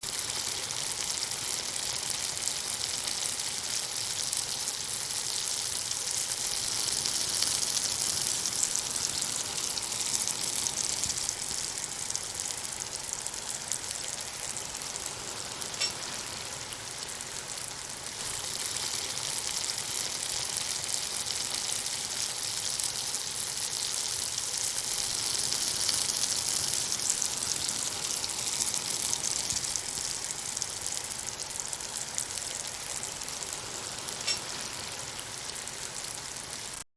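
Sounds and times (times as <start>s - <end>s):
oil sizzling in a frying pan: 0.0s - 36.9s.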